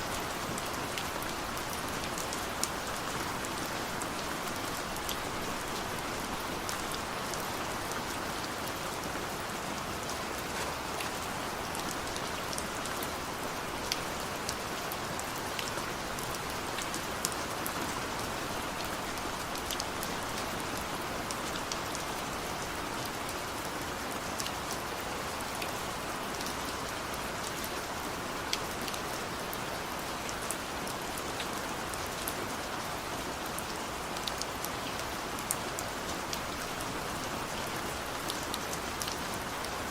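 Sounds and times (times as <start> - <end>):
heavy rain pattering: 0.0 - 39.9.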